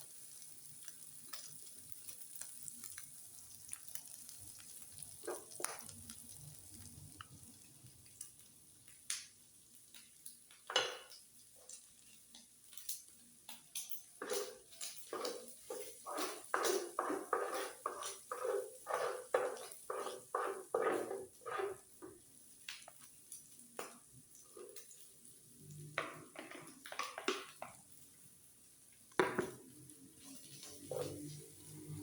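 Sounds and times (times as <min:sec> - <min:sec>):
metal utensils scraping on griddle: 0:14.2 - 0:22.0, 0:30.1 - 0:32.0.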